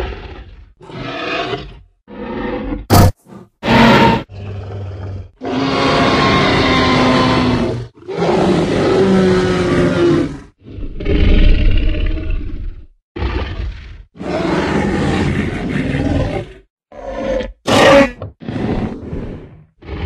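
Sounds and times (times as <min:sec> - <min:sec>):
dinosaur roars and growls: 0:00.0 - 0:20.0.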